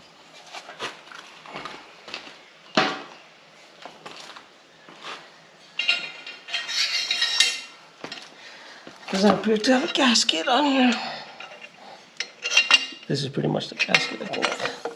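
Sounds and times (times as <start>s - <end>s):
metal rattling and scraping: 5.8s - 8.2s, 9.2s - 14.9s
metal tools clinking and knocking: 5.8s - 8.4s, 9.1s - 14.9s.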